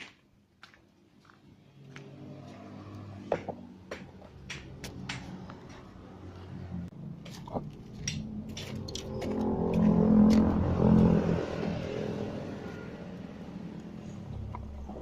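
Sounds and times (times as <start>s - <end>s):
sharp clicks and knocks: 3.3s - 5.8s, 7.2s - 10.6s
engine running at low revs: 5.5s - 15.0s.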